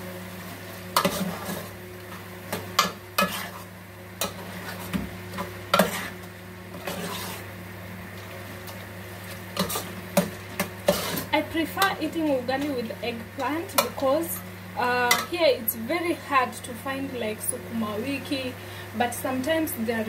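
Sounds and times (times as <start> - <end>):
steady low hum: 0.0 - 20.0
metal spoon scraping a pot: 2.8 - 4.8, 5.7 - 6.2, 6.8 - 7.4, 9.6 - 9.9, 10.8 - 11.3.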